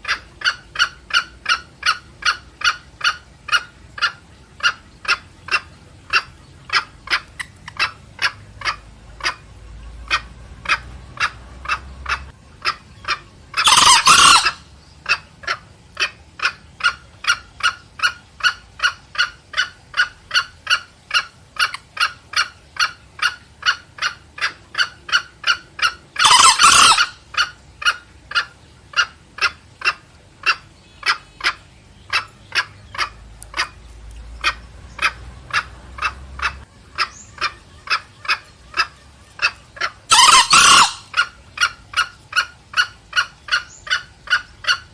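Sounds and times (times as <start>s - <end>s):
junglefowl clucking: 0.0s - 44.9s
rooster crowing: 40.1s - 41.0s.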